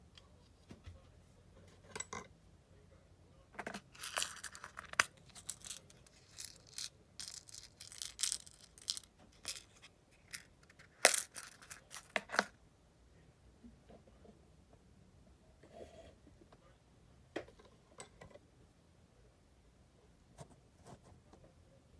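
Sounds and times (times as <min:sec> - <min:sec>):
materials rustling: 0:03.8 - 0:12.5.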